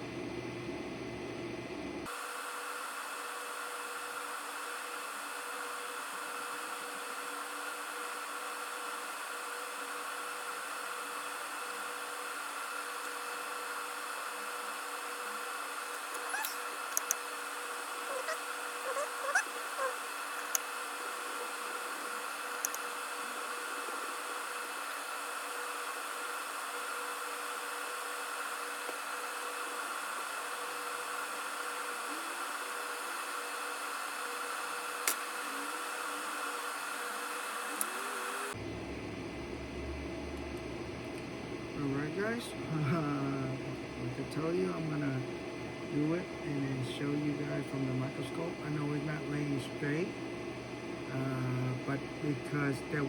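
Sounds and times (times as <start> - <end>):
faint steady hums: 0.0 - 53.0
electric blower hissing: 2.0 - 38.6.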